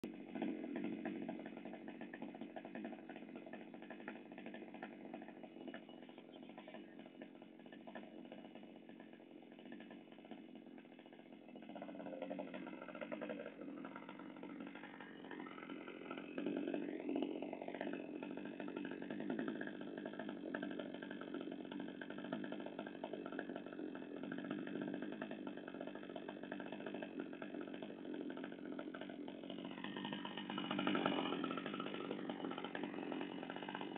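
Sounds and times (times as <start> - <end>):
chainsaw engine idling: 0.0 - 33.9.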